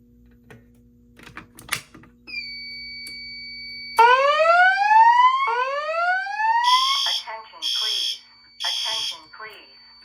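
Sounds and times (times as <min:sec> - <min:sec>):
rising whoop alarm tone: 0:04.0 - 0:07.1
high electronic alarm beep: 0:06.6 - 0:10.0.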